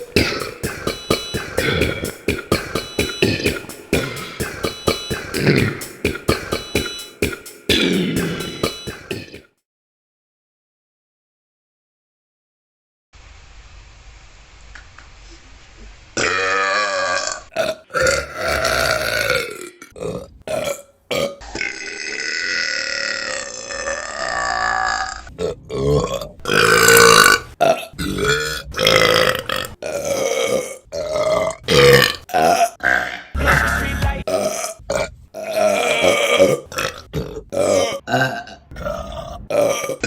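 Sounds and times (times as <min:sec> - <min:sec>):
women burping: 0:00.1 - 0:00.8, 0:07.7 - 0:09.4.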